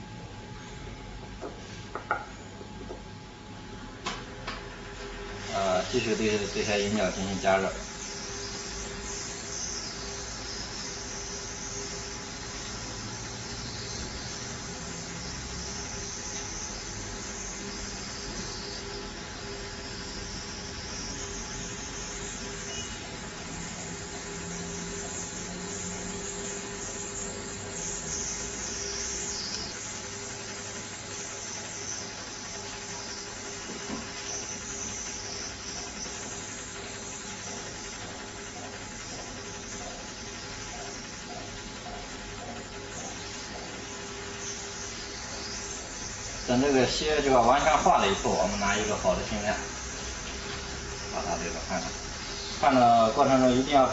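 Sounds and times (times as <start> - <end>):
hot air gun hissing: 5.2 - 53.9.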